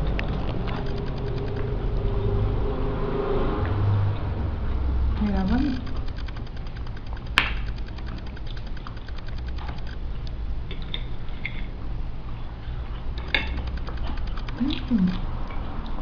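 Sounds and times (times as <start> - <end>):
steady low hum: 4.1 - 16.0.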